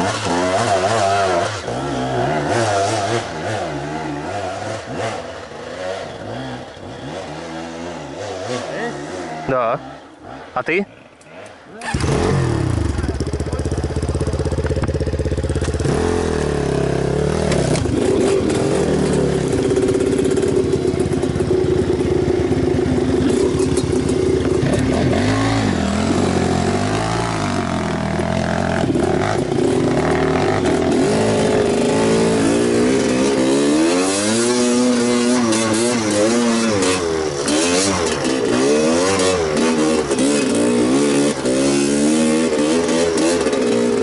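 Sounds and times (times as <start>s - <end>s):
motorcycle engine revving: 0.0s - 44.0s.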